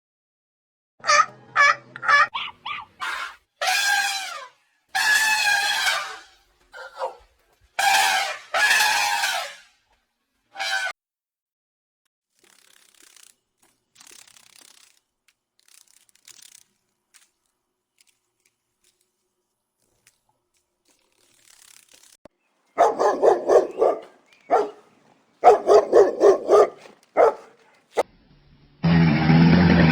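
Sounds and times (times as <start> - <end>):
dog barking sharp yaps: 2.3 - 4.4, 5.0 - 9.5, 22.8 - 28.0.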